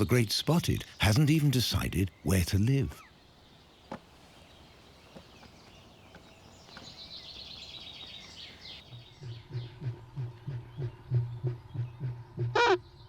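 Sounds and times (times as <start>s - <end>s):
songbird high trilling: 0.0s - 9.2s
low repeated pulses: 8.9s - 13.0s.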